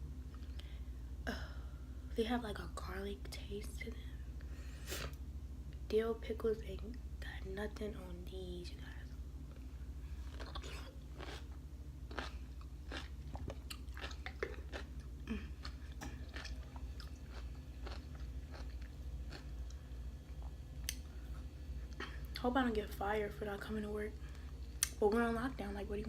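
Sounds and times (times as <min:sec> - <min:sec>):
steady low hum: 0:00.0 - 0:26.0
person chewing crunchy pickles: 0:09.6 - 0:22.0.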